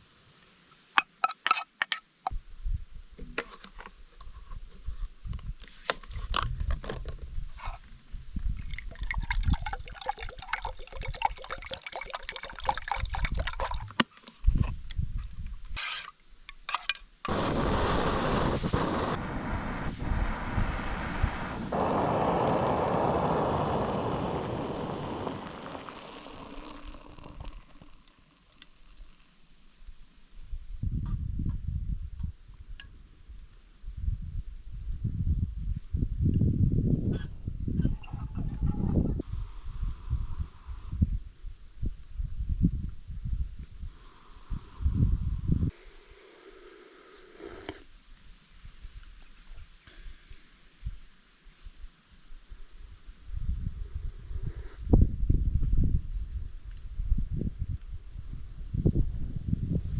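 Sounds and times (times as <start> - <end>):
water pouring into a vessel: 8.6 - 13.8, 17.3 - 29.4.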